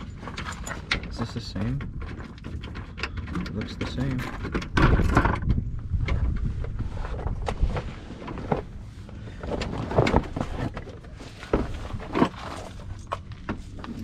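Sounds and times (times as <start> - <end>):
hand tools and bolts clicking: 0.0 - 5.4.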